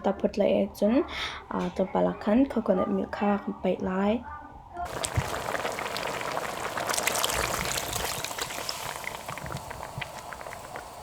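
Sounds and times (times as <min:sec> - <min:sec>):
food sizzling and bubbling: 0:04.9 - 0:11.0
liquid pouring into hot pan: 0:04.9 - 0:11.0.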